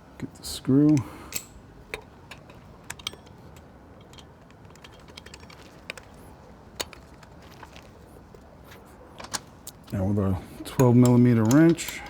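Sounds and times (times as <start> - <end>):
small screw clicks and taps: 0.8 - 8.0, 10.8 - 12.0.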